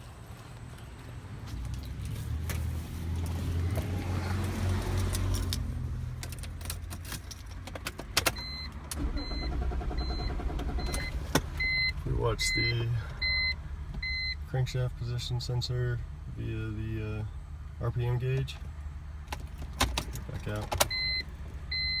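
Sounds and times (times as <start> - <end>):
engine cranking on starter: 8.4 - 11.8
short electronic beeps: 8.4 - 14.4, 20.9 - 22.0.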